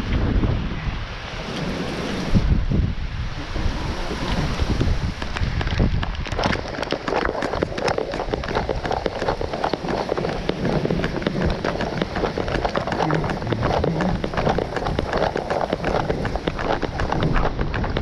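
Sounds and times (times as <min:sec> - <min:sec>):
heavy rain: 0:00.0 - 0:07.3, 0:10.4 - 0:18.0
handheld camera jostling: 0:05.1 - 0:18.0
quick running footsteps: 0:05.1 - 0:18.0.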